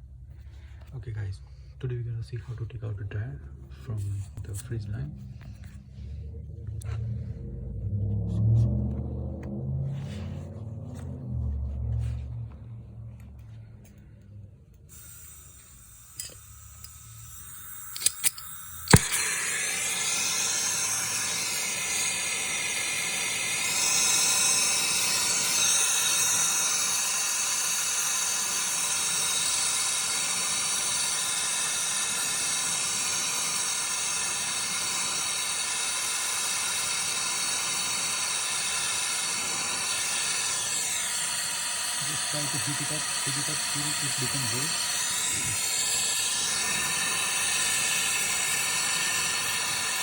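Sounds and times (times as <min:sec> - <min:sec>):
gas torch igniter clicks: 0:14.7 - 0:50.0
gas torch lighting snap: 0:14.7 - 0:50.0
torch flame hissing: 0:14.8 - 0:50.0.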